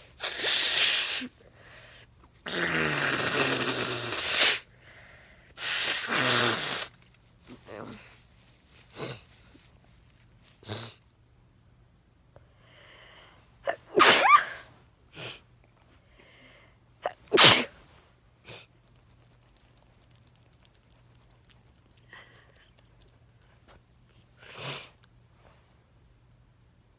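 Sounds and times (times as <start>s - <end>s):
person sneezing: 0.2s - 1.4s, 13.7s - 15.4s, 17.0s - 17.8s.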